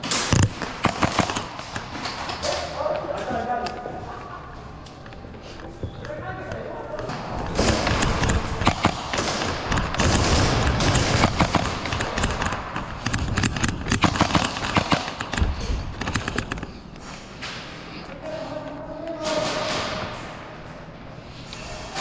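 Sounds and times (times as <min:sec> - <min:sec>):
airsoft gunshots: 0:00.0 - 0:01.6, 0:07.5 - 0:15.4.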